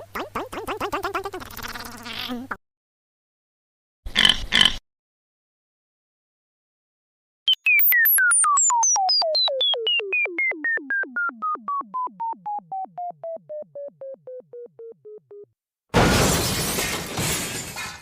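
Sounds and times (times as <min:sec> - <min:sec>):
descending electronic blips: 0:07.5 - 0:15.5.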